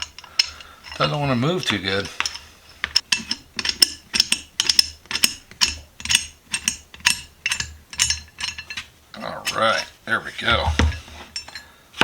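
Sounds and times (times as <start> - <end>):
sharp metal clicks and taps: 1.6 - 8.8.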